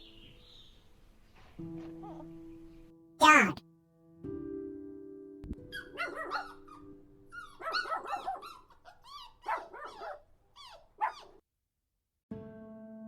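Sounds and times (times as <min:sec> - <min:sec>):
dog barking: 0:05.7 - 0:11.4.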